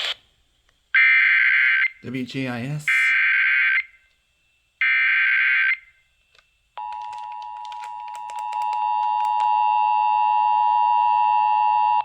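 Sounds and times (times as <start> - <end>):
crackling clicks: 6.2 - 9.5.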